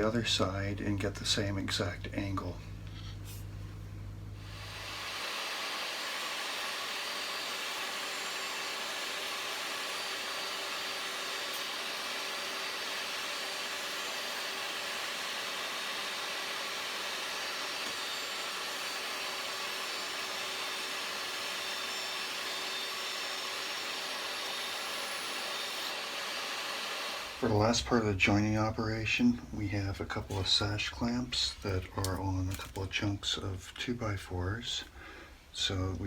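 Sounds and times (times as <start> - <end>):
table saw ripping wood: 4.4 - 27.9.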